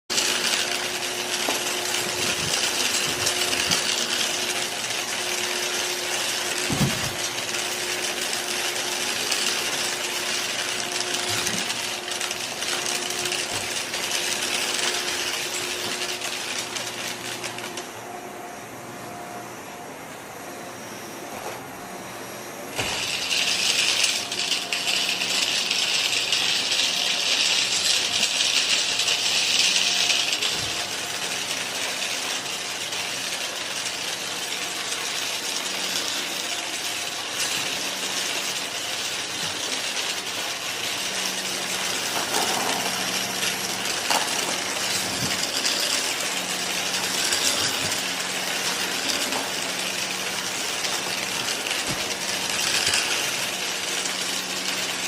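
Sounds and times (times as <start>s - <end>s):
coins rattling through vacuum: 0.1s - 17.8s, 22.8s - 55.0s
vacuum cleaner running: 0.1s - 55.0s.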